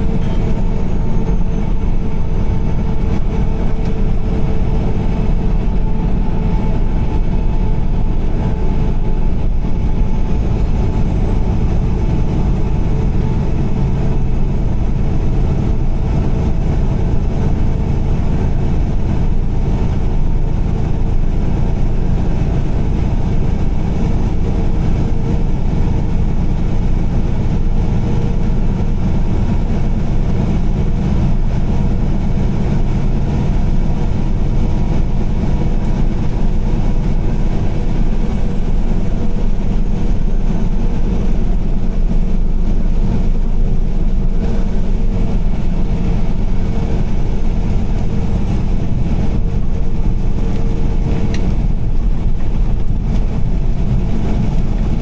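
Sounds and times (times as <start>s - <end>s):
tyres and engine rumbling: 0.0s - 55.0s.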